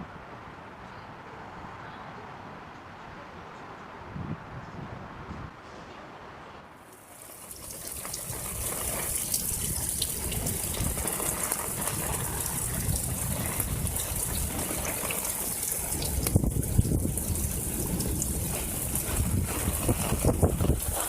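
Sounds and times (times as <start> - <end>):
heavy rain downpour: 6.9 - 21.0.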